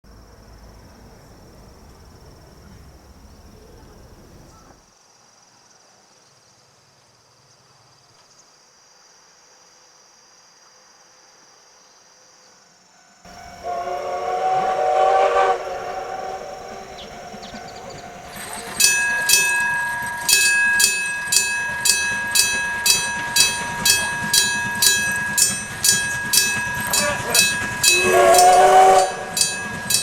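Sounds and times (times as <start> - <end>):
insects trilling: 0.1 - 4.8, 13.3 - 30.0
steam locomotive whistle: 13.3 - 30.0.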